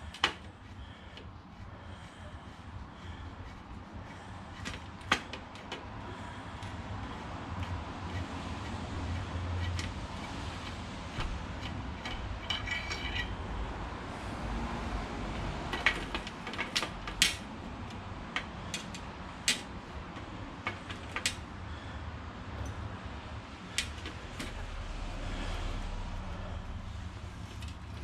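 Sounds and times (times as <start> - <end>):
metal tools clinking: 11.6 - 13.4
low hum: 24.5 - 28.0.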